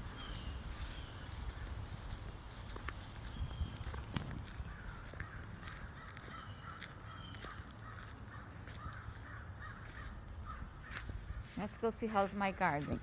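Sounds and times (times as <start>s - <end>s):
crows cawing: 4.5s - 11.8s.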